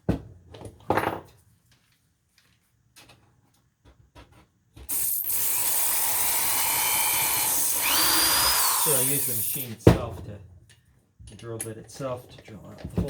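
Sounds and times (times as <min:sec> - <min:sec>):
power drill drilling: 0:04.9 - 0:09.7.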